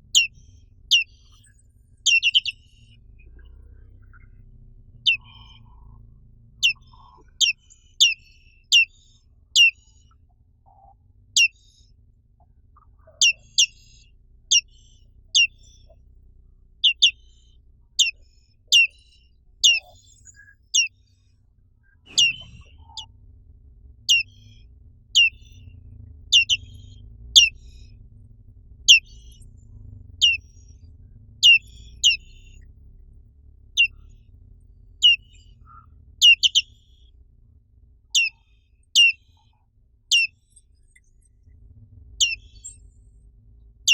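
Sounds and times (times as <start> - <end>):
faint low hum: 0.0 - 43.9
bird calling high sliding notes: 2.1 - 4.4, 5.0 - 8.9, 19.6 - 20.9, 22.0 - 23.1, 24.1 - 24.6, 26.4 - 27.8, 31.4 - 32.6, 33.8 - 34.1.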